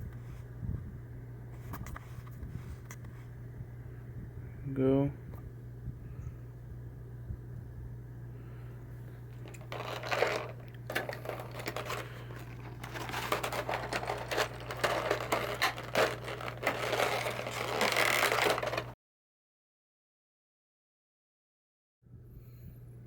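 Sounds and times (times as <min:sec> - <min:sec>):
steady low hum: 0:00.0 - 0:19.0
plastic packaging crinkling: 0:09.4 - 0:19.0.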